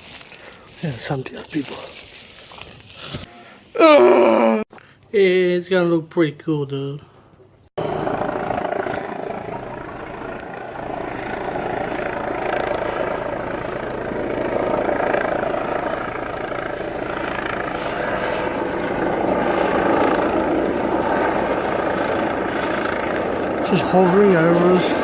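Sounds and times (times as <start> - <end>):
helicopter rotor and engine: 7.8 - 25.0.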